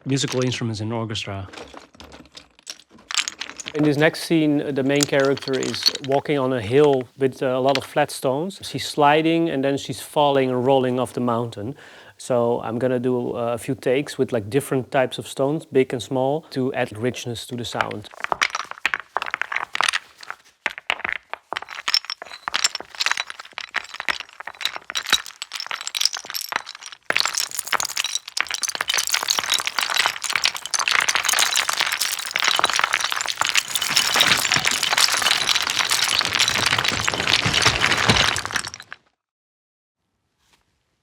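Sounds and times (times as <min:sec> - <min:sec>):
stones knocking together: 0:00.0 - 0:00.5, 0:01.5 - 0:08.1, 0:17.6 - 0:39.0
stones sliding and tumbling: 0:00.0 - 0:00.6, 0:01.3 - 0:11.5, 0:16.8 - 0:39.0.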